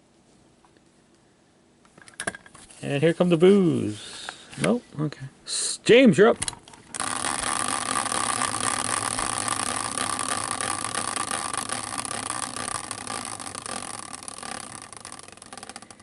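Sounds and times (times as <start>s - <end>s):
prize wheel pointer clicking: 6.9s - 16.0s.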